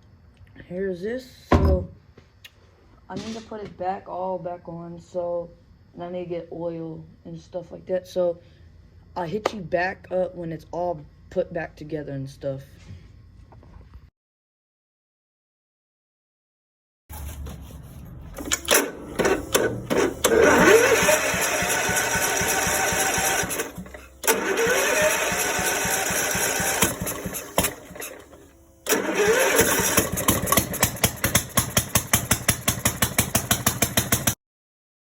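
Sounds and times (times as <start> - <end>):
lawnmower engine running: 18.4 - 34.4.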